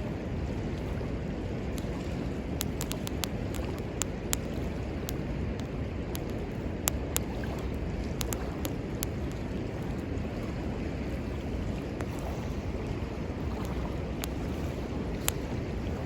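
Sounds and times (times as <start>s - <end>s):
sharp pops of fire: 2.6s - 7.4s, 8.2s - 9.2s
wood fire crackling: 2.6s - 7.4s.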